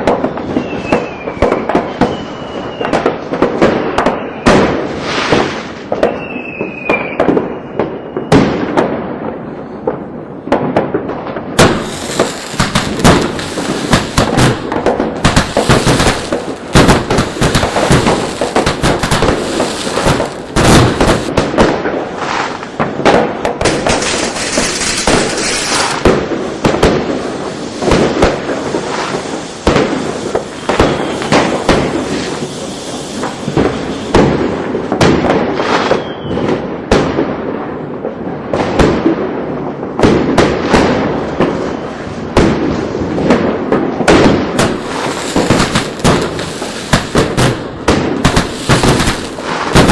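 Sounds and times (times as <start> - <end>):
fireworks bangs and pops: 0.0 - 49.9
hissing crackle of fireworks: 0.0 - 49.9
high firework whistle: 0.3 - 8.5, 23.9 - 26.1, 28.7 - 34.3, 35.5 - 36.6, 44.6 - 47.6.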